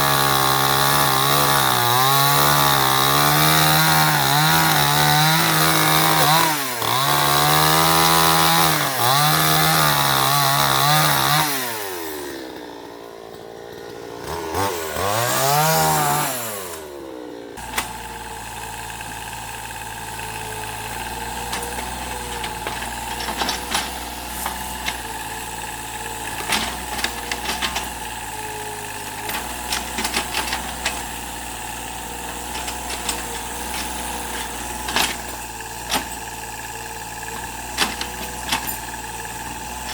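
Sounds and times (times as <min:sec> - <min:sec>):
chainsaw cutting wood: 0:00.0 - 0:39.9
excavator engine running: 0:00.0 - 0:39.9
knocks and clanks: 0:20.2 - 0:39.9.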